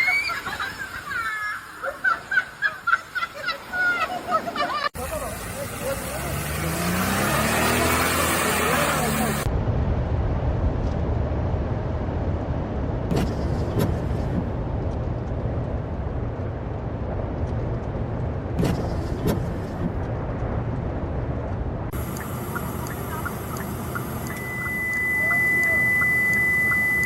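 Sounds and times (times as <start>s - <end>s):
vehicle low rumble: 0.0s - 27.0s.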